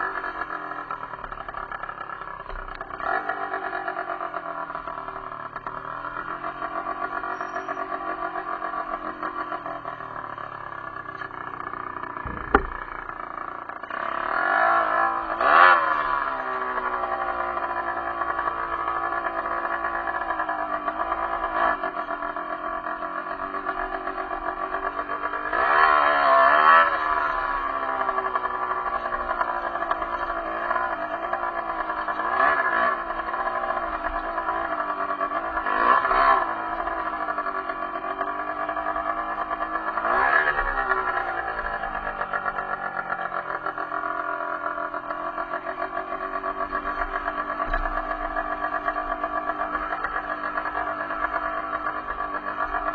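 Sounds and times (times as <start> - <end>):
motorcycle engine revving: 0.0 - 52.9
sharp knock: 12.2 - 12.8.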